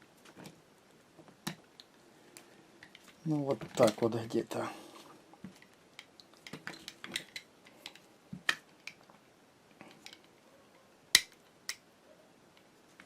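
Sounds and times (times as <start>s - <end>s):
small metal parts clicking: 5.6s - 8.1s.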